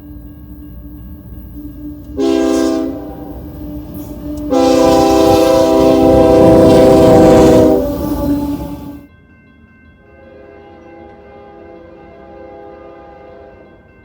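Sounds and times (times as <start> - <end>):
train rumbling past: 0.0 - 9.1
locomotive air horn: 1.6 - 9.0.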